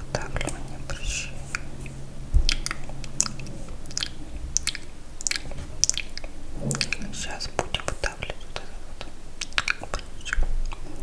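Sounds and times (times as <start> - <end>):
low bump: 0.0 - 9.3
wet mouth smacks and clicks: 2.5 - 6.9, 9.4 - 10.8.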